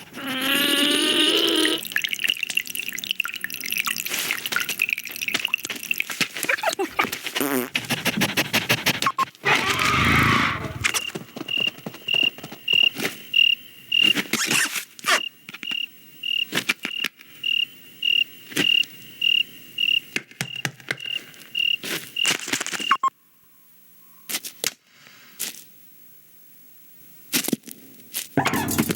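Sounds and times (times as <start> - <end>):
cricket chirping: 6.5 - 24.3.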